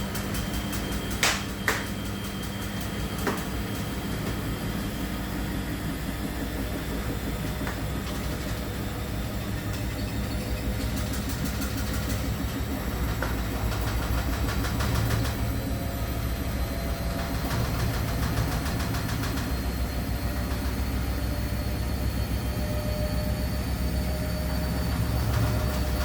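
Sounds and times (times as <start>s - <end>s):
washing machine running: 0.0s - 26.0s
washing machine knocking on floor: 0.1s - 4.9s.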